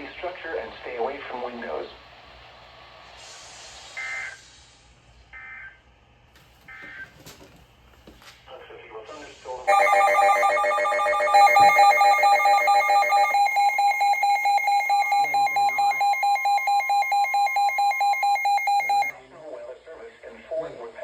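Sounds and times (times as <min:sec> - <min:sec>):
dense electronic alarm: 0:09.7 - 0:19.1
electronic alarm beeping rapidly: 0:09.7 - 0:19.1.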